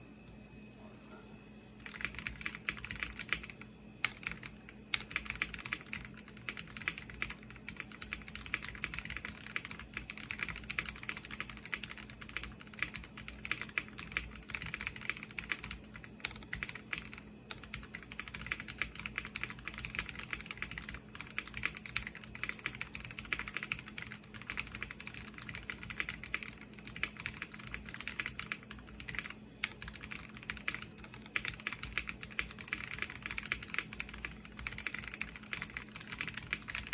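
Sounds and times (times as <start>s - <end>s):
fast typing on mechanical keyboard: 1.8s - 36.9s.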